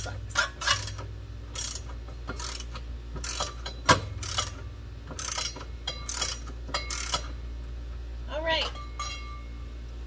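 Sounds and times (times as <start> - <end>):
ratchet wrench clicking: 0.0 - 7.4.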